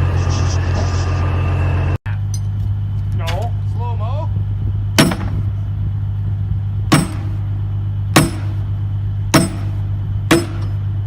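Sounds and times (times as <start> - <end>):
low engine hum: 0.0 - 11.0
sharp ringing strikes: 5.0 - 5.6, 6.9 - 10.9.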